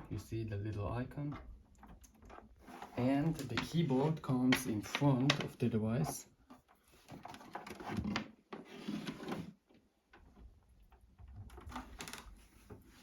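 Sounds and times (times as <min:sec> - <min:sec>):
cables rubbing: 0:01.9 - 0:06.8
plastic keyboard knocks and clicks: 0:03.2 - 0:05.6.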